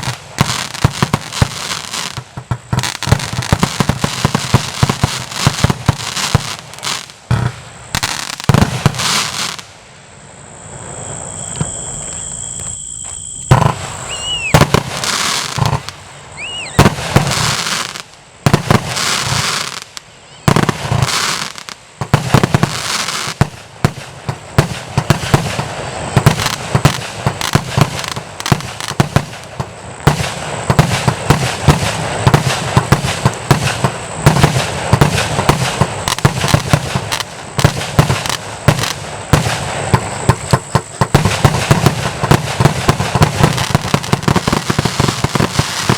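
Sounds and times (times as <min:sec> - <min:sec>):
fireworks cake firing shots: 0:00.0 - 0:09.7, 0:13.5 - 0:45.9
fireworks crackle: 0:00.0 - 0:45.9
steady high tone: 0:10.4 - 0:14.6
short whistles: 0:11.3 - 0:14.7, 0:16.3 - 0:16.9, 0:20.0 - 0:20.6.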